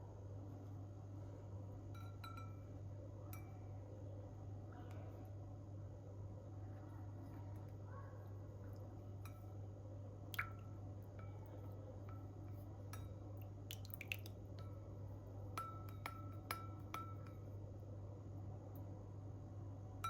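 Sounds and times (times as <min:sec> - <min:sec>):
spoon clinking against glass: 0:01.9 - 0:02.7, 0:15.6 - 0:17.4.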